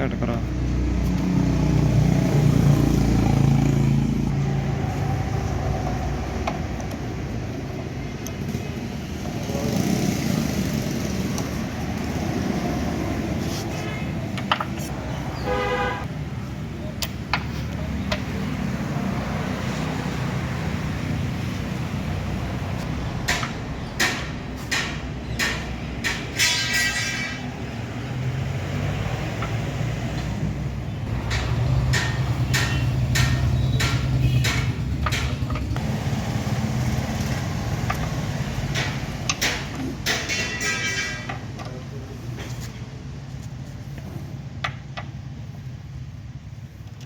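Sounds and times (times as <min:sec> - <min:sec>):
road traffic rumbling: 0:00.0 - 0:47.0
hand tools clicking and tapping: 0:14.3 - 0:14.9, 0:16.9 - 0:18.4, 0:22.8 - 0:27.5, 0:31.1 - 0:35.9, 0:37.1 - 0:41.8
vehicle horn toot: 0:15.4 - 0:16.1.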